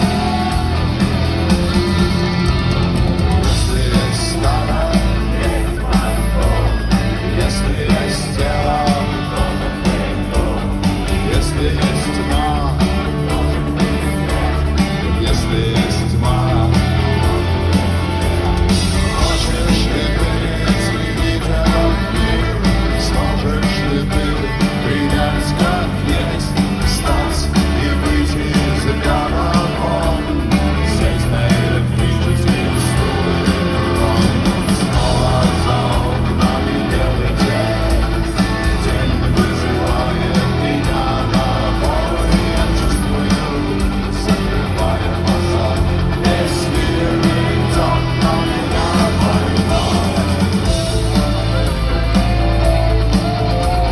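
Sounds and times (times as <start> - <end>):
rock music: 0.0 - 53.9
wordless singing: 0.0 - 53.9.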